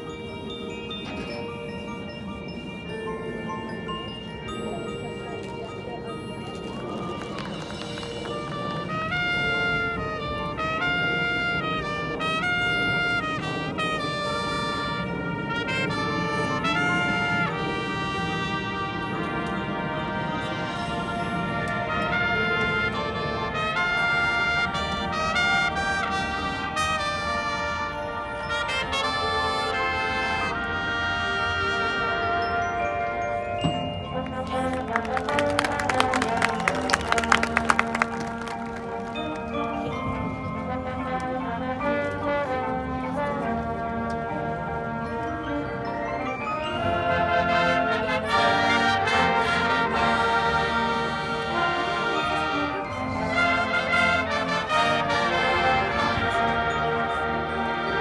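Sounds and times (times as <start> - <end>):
mallet percussion: 0.0 - 11.2, 31.3 - 58.0
brass band playing chords: 3.2 - 58.0.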